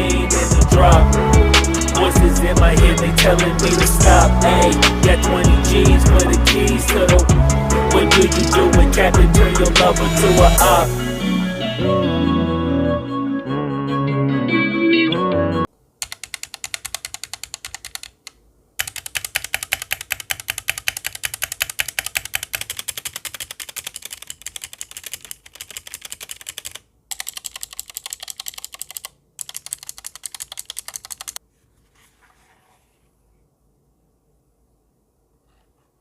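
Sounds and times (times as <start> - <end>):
music: 0.0 - 15.7
mechanical keyboard typing: 16.0 - 31.4.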